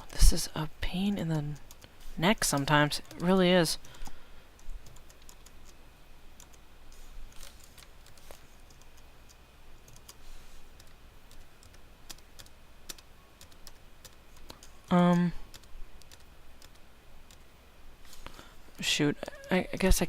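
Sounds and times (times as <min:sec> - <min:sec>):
low steady hum: 0:00.0 - 0:20.0
computer keyboard keystrokes: 0:01.5 - 0:05.8, 0:10.8 - 0:17.4.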